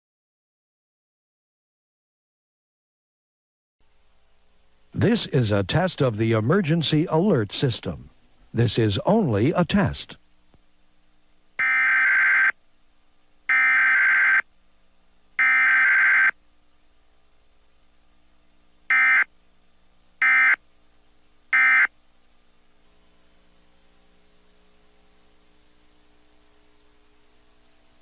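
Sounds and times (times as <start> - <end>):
harsh buzzy data bursts: 11.6 - 12.6, 13.5 - 14.4, 15.4 - 16.4, 20.2 - 20.6.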